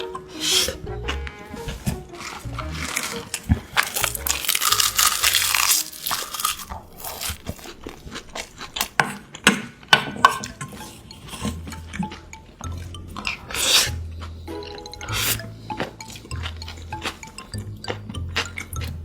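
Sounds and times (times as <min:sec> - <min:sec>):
crunching and crackling while eating: 0:01.0 - 0:19.0
crisp clicks and bites: 0:01.7 - 0:09.0.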